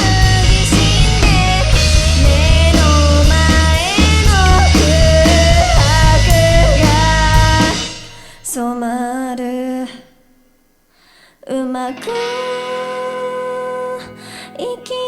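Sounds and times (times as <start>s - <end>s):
live rock band music: 0.0s - 8.5s, 12.0s - 14.2s
held note with vibrato: 0.0s - 8.6s.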